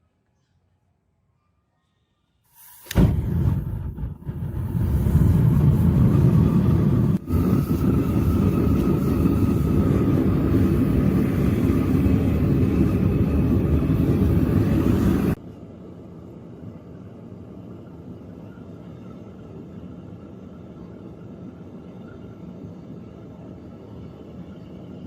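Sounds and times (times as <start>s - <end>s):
motor running with low rumble: 2.9s - 15.4s.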